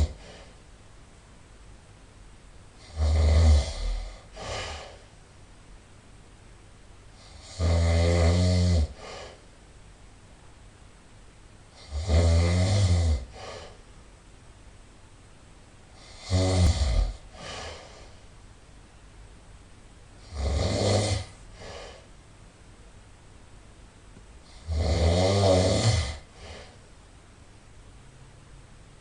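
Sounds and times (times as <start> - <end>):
person snoring loudly: 0.0 - 0.5, 2.8 - 5.0, 7.2 - 9.4, 11.8 - 13.7, 16.0 - 18.0, 20.2 - 22.0, 24.5 - 26.8.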